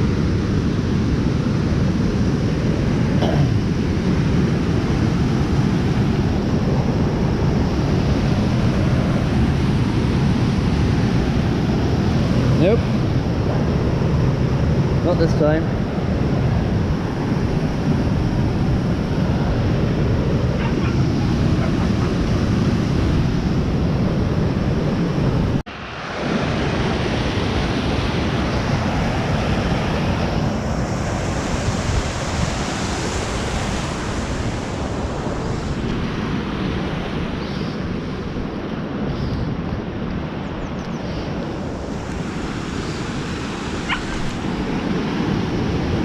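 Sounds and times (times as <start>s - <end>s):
waterfall rushing: 41.9s - 45.2s.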